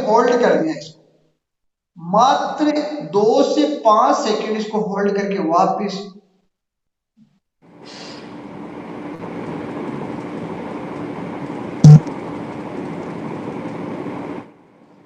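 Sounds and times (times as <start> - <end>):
man exhaling slowly: 7.9 - 8.3.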